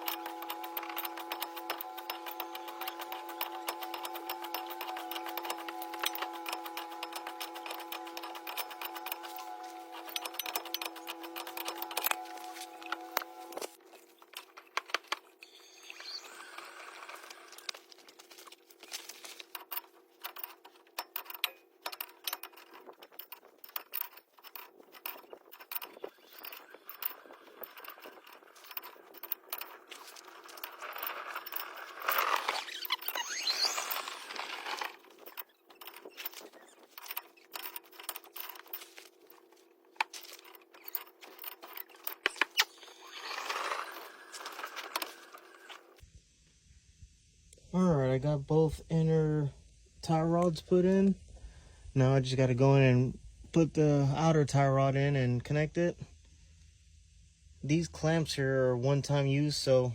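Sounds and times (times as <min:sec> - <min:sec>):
metal tools clinking and scraping: 0:00.0 - 0:45.9
faint steady hum: 0:00.0 - 0:59.9.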